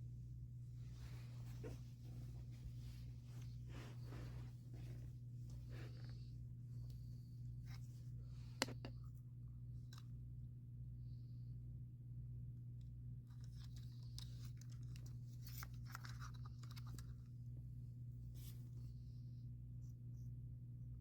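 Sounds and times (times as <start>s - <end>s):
steady low hum: 0.0s - 21.0s
small parts clicking and scraping: 13.3s - 17.3s.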